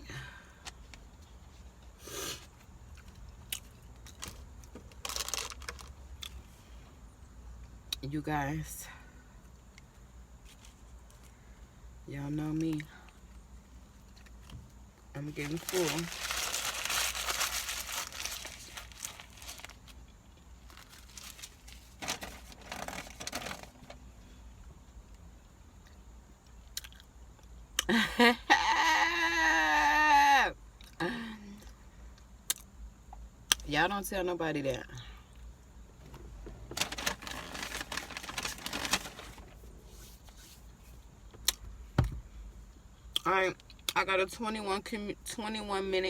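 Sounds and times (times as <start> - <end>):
food wrapper crinkling: 4.1 - 6.0, 15.2 - 24.0, 36.7 - 39.6
crackling and rustling: 15.3 - 24.0, 36.0 - 41.0.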